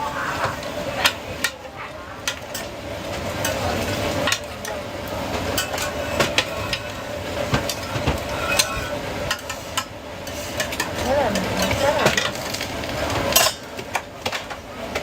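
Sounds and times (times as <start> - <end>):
frying hiss: 0.0 - 15.0
utensils clinking and scraping: 5.4 - 14.5.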